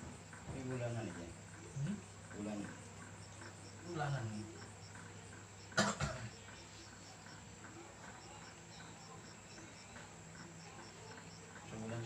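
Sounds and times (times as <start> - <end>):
faint high chirps: 3.0 - 12.0.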